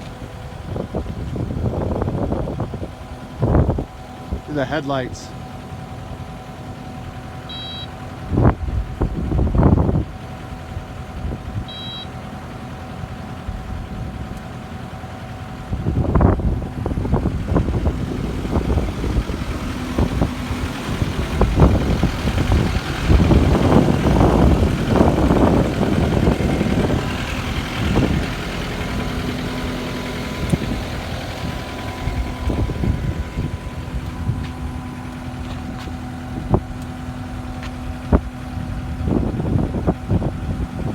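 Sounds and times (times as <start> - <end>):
diesel engine running: 0.0 - 40.9
short electronic beeps: 7.5 - 8.0, 11.7 - 12.1.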